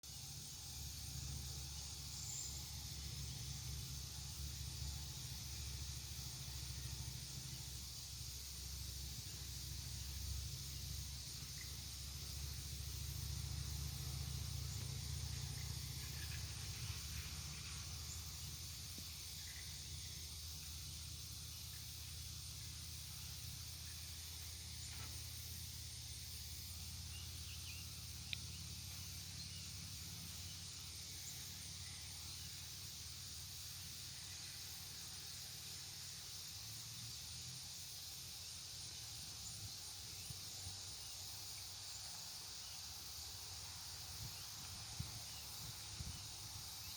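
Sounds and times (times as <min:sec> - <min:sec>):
steady high hiss: 0:00.0 - 0:46.9
faint click: 0:28.3 - 0:28.5.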